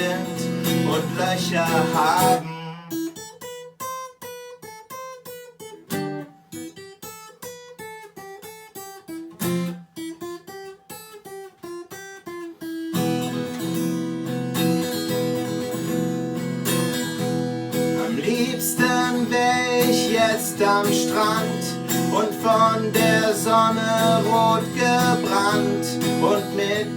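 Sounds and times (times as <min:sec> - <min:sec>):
acoustic guitar playing: 0:00.0 - 0:26.9.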